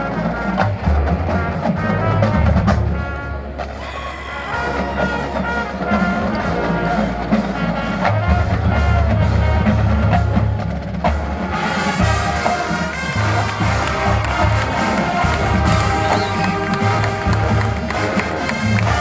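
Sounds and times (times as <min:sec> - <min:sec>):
brass sustained chords: 0:00.0 - 0:19.0
drumline: 0:00.0 - 0:19.0
bass drums: 0:04.6 - 0:19.0.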